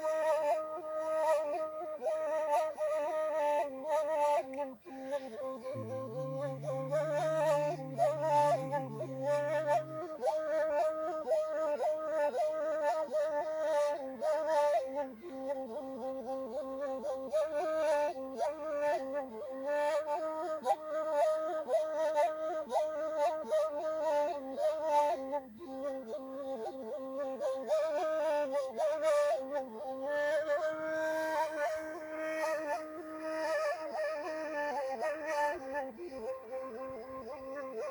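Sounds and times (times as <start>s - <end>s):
reed flute melody with trills: 0.0s - 37.9s
faint low steady tone: 5.7s - 10.2s.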